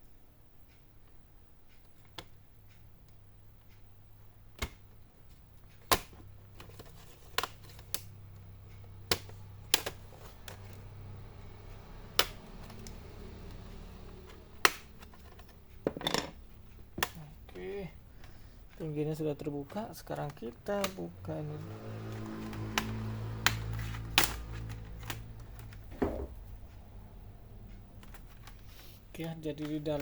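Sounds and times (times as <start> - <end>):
low steady hum: 0.0 - 30.0
plastic clips clicking loose: 4.5 - 5.0, 5.6 - 25.9, 27.9 - 30.0.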